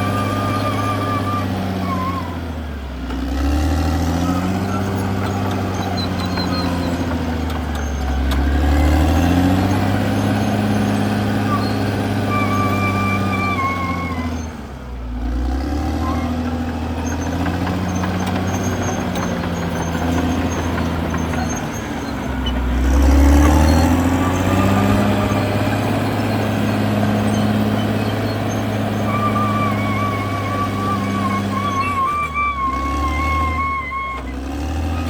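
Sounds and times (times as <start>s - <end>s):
bulldozer diesel engine working: 0.0s - 35.0s.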